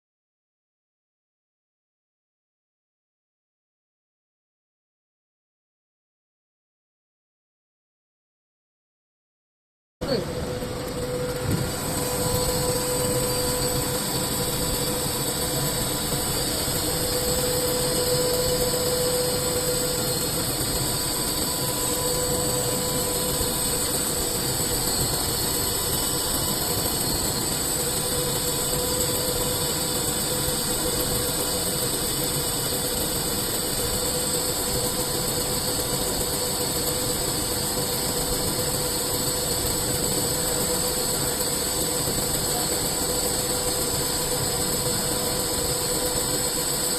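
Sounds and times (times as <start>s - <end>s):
cnc machine humming and whining: 10.0s - 46.9s.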